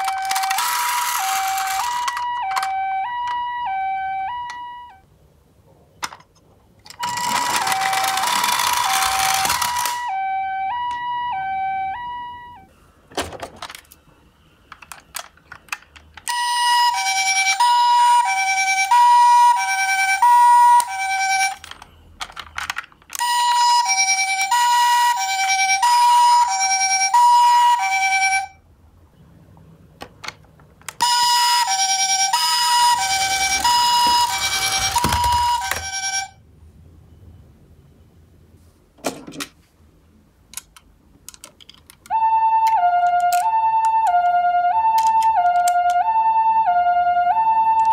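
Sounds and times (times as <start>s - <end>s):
toy ambulance two-tone siren: 0.0s - 5.1s, 6.9s - 12.8s, 13.6s - 28.6s, 30.9s - 36.4s, 42.0s - 47.9s
small clicks and knocks: 14.7s - 16.4s, 20.8s - 23.3s, 40.5s - 44.3s, 44.9s - 46.0s.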